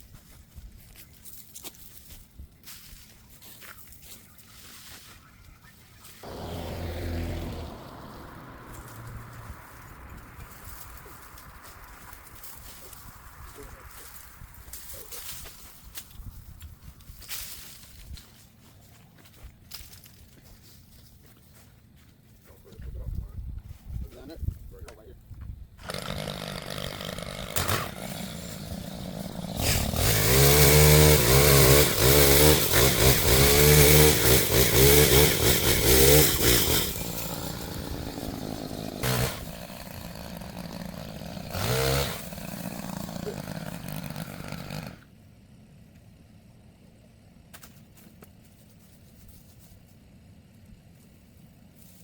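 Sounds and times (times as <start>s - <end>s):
chainsaw revving and idling: 6.2s - 12.8s, 25.8s - 45.2s.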